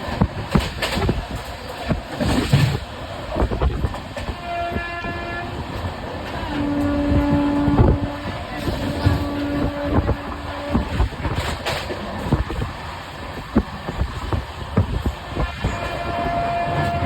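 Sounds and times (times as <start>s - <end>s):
train wheels rumbling over rail joints: 0.0s - 17.0s
train horn blasts: 4.2s - 11.6s, 15.3s - 17.0s.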